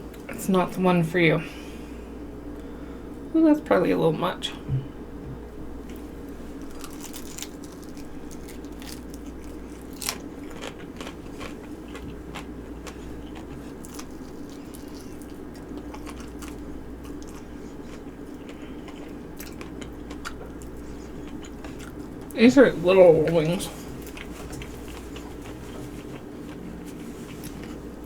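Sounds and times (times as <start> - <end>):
person chewing chicken wings: 6.6 - 22.4, 23.7 - 28.0.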